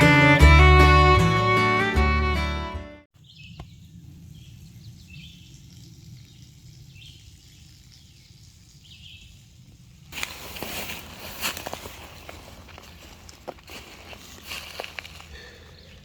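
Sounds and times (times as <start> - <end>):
bird chirping: 3.2 - 9.4.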